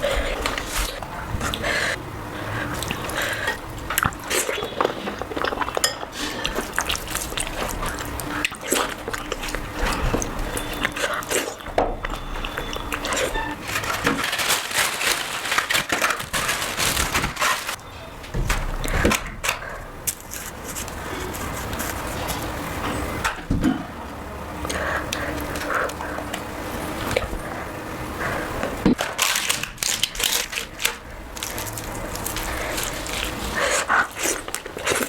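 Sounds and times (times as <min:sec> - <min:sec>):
wet chewing and smacking: 0:02.6 - 0:13.5, 0:28.9 - 0:35.0.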